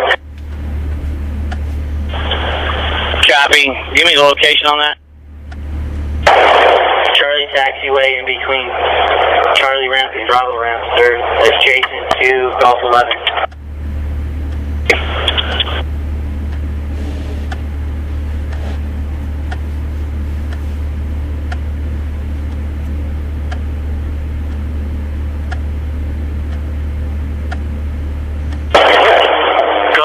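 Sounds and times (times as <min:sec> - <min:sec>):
radio static burst: 0:00.0 - 0:00.2, 0:02.1 - 0:05.0, 0:06.2 - 0:13.5, 0:14.8 - 0:15.9, 0:28.7 - 0:30.0
low hum: 0:00.0 - 0:30.0.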